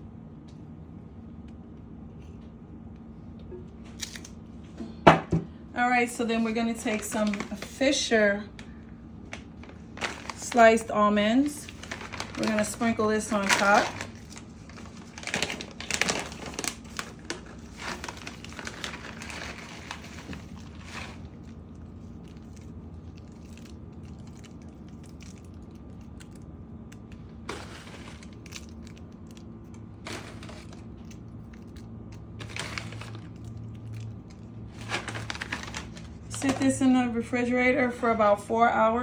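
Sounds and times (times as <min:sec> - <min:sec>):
bag of almonds crinkling: 0:06.4 - 0:36.8.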